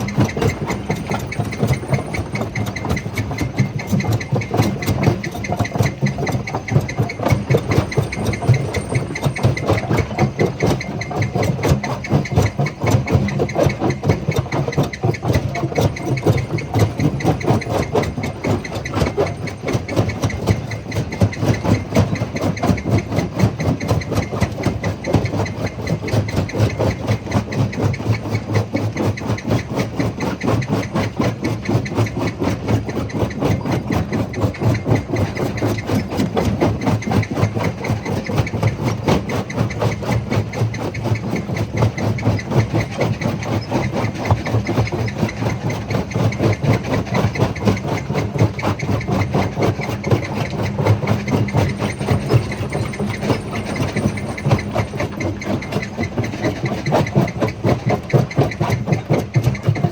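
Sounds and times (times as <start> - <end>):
stone crusher rumbling: 49.2 - 56.7.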